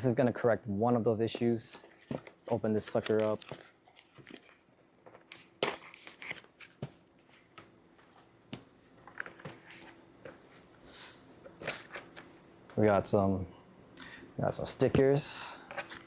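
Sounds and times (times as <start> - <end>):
packaging rustling: 1.8 - 10.6.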